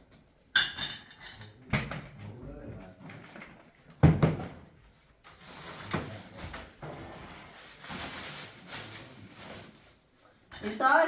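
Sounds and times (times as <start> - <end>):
rustling: 5.2 - 10.2.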